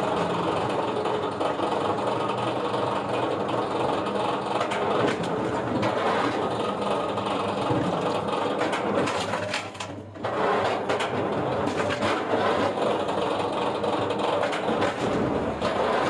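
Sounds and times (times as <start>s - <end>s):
wood-processing machine running: 3.6s - 16.0s.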